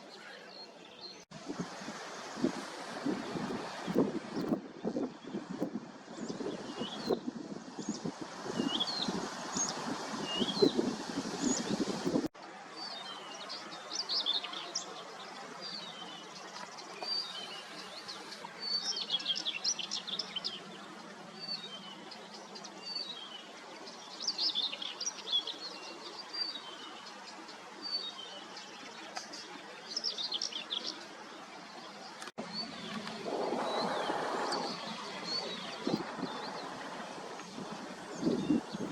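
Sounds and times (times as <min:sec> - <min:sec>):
wind rumble on microphone: 0:01.3 - 0:12.3, 0:32.4 - 0:38.9
small birds singing: 0:03.8 - 0:12.0, 0:12.8 - 0:38.9.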